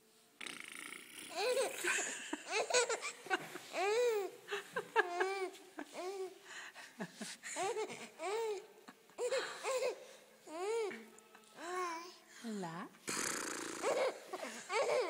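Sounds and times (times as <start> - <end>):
baby giggling: 1.3 - 4.3, 5.0 - 6.3, 7.6 - 8.6, 9.2 - 11.0, 13.7 - 15.0.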